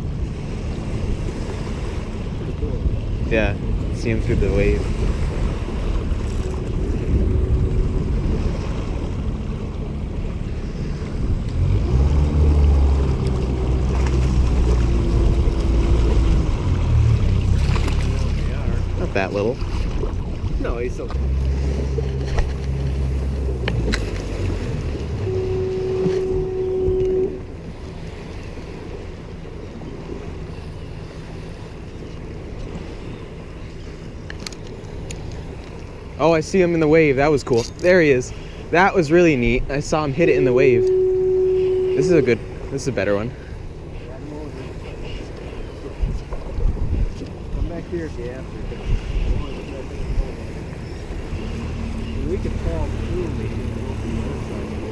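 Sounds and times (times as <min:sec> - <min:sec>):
wind buffeting microphone: 0:00.0 - 0:29.1, 0:37.0 - 0:54.9
low steady hum: 0:00.0 - 0:31.4, 0:37.6 - 0:44.6
water noise: 0:00.0 - 0:54.9
waves washing around boat: 0:00.0 - 0:54.9.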